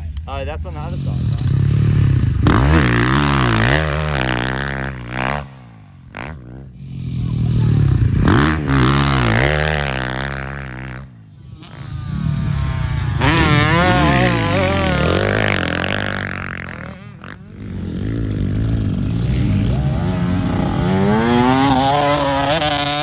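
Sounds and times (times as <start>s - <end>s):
motocross bike engines revving: 0.0s - 23.0s.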